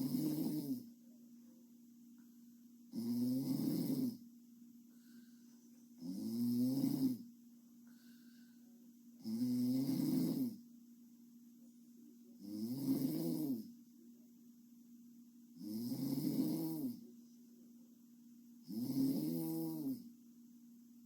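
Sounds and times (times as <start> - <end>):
woman snoring: 0.0 - 0.9, 2.9 - 4.2, 6.0 - 7.2, 9.2 - 10.6, 12.4 - 13.7, 15.6 - 17.0, 18.7 - 20.1.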